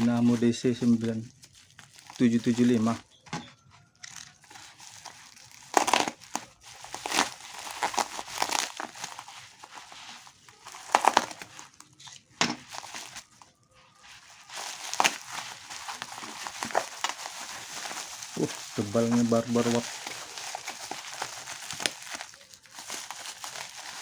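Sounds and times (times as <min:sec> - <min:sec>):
plastic packaging crinkling: 0:00.0 - 0:24.0.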